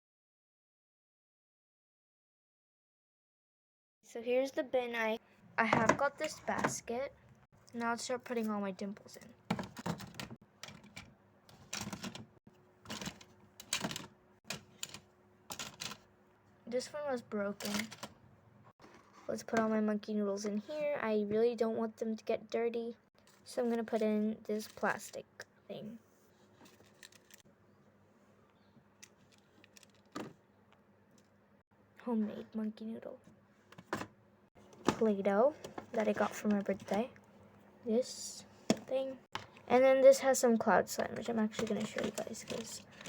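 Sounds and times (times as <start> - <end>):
plastic rattling when handled: 9.4 - 16.1, 41.0 - 43.0.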